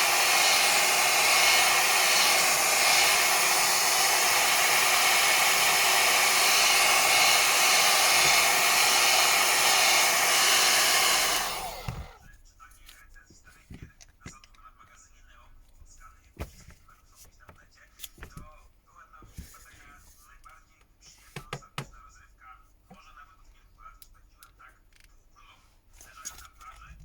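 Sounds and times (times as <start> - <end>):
hot-air blower running: 0.0 - 12.2.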